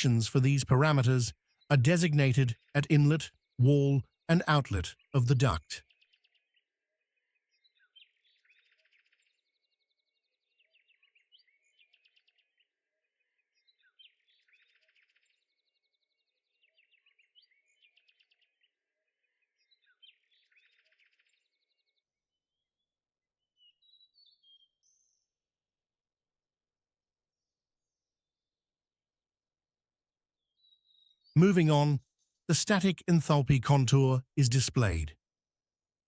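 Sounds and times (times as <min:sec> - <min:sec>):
faint birdsong chirps and trills: 0:00.8 - 0:05.2, 0:05.8 - 0:26.0, 0:30.1 - 0:31.4.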